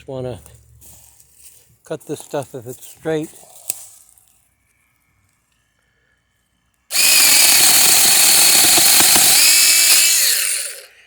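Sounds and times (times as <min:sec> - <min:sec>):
mini chainsaw cutting branch: 0:06.9 - 0:11.0.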